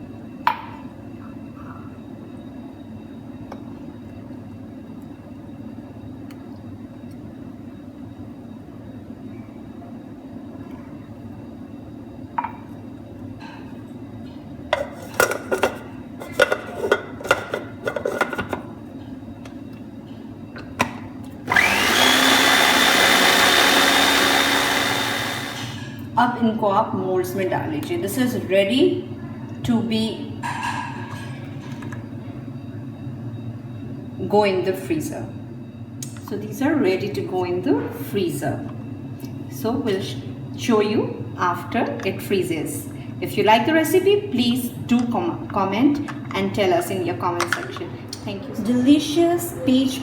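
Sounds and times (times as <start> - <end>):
blender running: 21.5 - 25.9.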